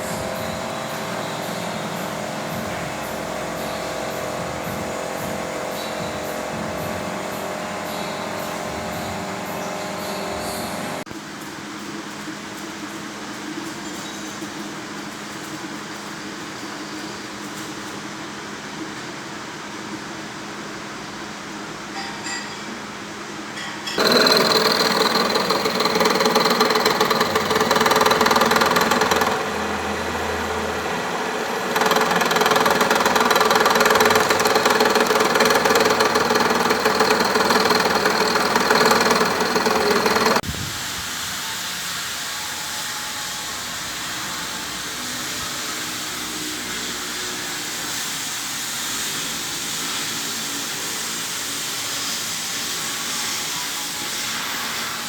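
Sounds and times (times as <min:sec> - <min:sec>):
machinery clattering: 0:00.0 - 0:11.0, 0:24.0 - 0:40.4.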